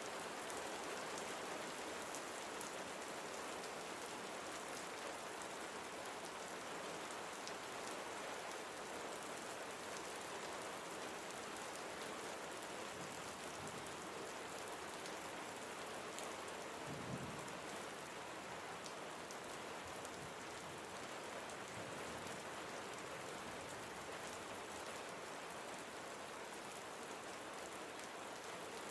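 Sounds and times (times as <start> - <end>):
steady rain: 0.0 - 28.9.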